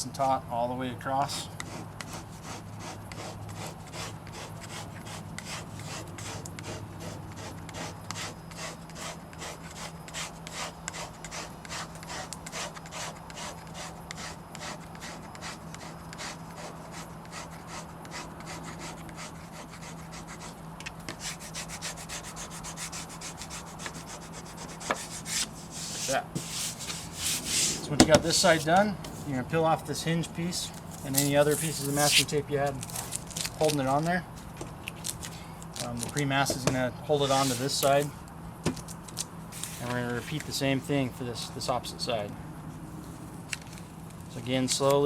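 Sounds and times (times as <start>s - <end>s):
squeegee rubbing on glass: 1.6s - 29.3s, 30.9s - 32.3s, 37.3s - 37.9s.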